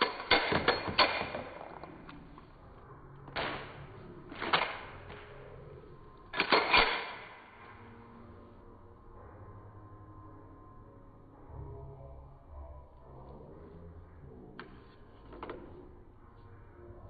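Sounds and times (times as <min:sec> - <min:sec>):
pistol metallic clicks and clacks: 0:00.0 - 0:02.2, 0:06.4 - 0:07.7.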